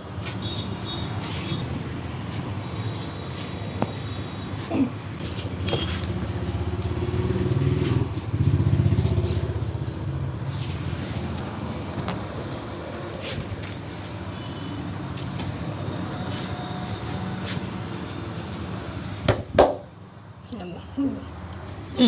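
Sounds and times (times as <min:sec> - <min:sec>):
traffic hum: 0:00.0 - 0:22.0
motor vehicle passing: 0:05.4 - 0:13.4.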